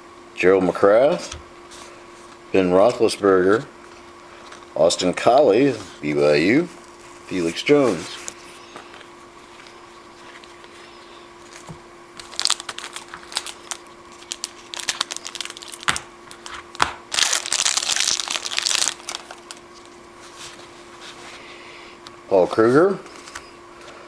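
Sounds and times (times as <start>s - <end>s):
foil wrapper crinkling and tearing: 11.4s - 20.0s.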